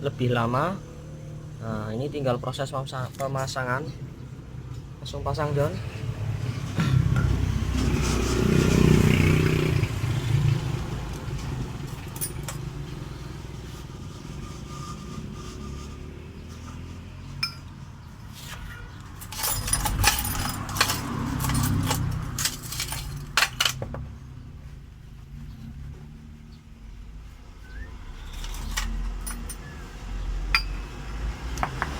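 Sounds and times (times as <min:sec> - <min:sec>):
vehicle engine rumbling: 0:00.0 - 0:31.9
metal parts clinking and scraping: 0:11.4 - 0:13.0, 0:16.5 - 0:24.0, 0:28.1 - 0:29.8.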